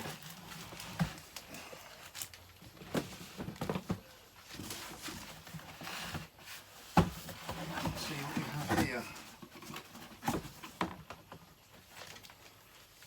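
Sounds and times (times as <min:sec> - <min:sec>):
knocks and taps on boxes: 0:06.9 - 0:11.2.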